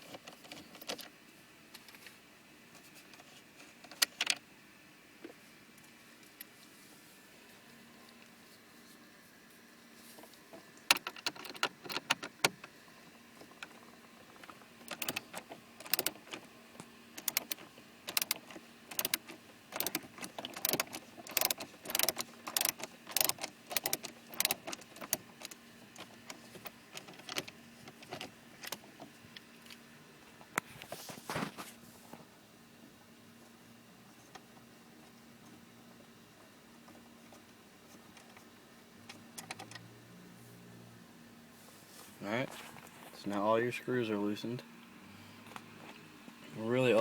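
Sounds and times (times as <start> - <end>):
screwdriver clicking and knocking: 10.9 - 12.6, 14.4 - 16.4, 17.2 - 26.1.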